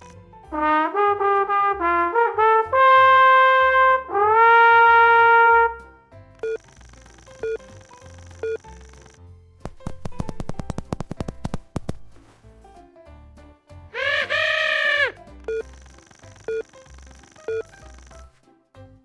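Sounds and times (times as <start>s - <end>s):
trumpet comic phrase: 0.5s - 5.9s, 14.0s - 15.2s.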